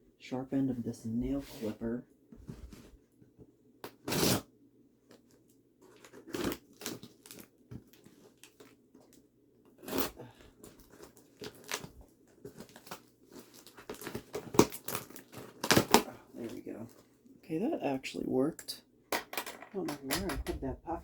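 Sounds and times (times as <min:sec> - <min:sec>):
cardboard scratching and ripping: 0:03.9 - 0:04.4, 0:05.9 - 0:07.4, 0:09.8 - 0:16.1.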